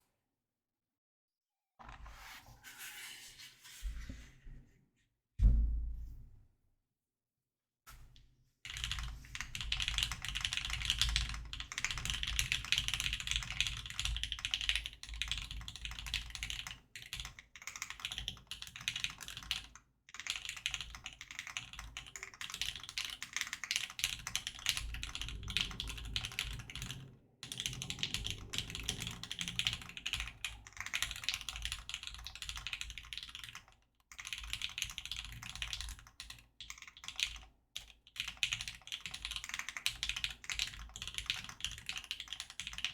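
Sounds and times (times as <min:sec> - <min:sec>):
mechanical keyboard typing: 0:08.7 - 0:42.9.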